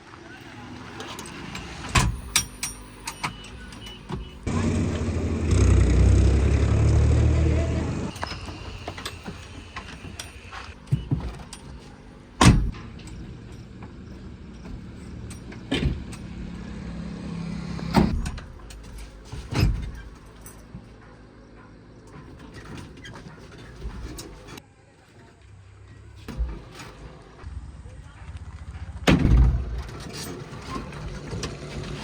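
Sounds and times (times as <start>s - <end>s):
heavy machinery engine hum: 0.1s - 24.6s.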